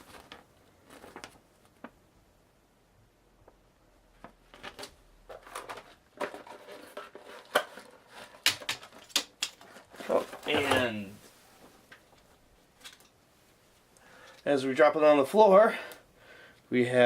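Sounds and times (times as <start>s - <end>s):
cardboard and paper rustling: 0.0s - 2.0s, 4.2s - 11.3s.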